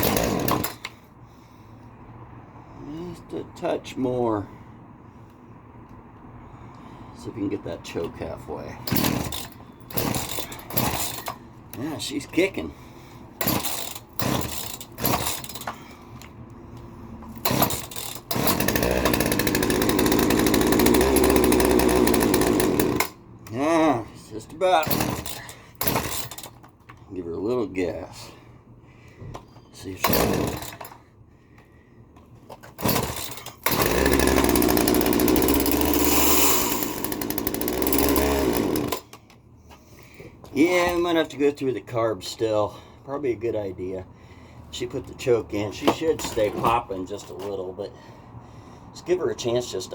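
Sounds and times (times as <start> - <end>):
chainsaw starting and running: 0.0 - 1.0, 8.8 - 12.0, 13.4 - 15.8, 17.3 - 24.0, 24.7 - 26.6, 29.9 - 31.0, 32.6 - 39.2.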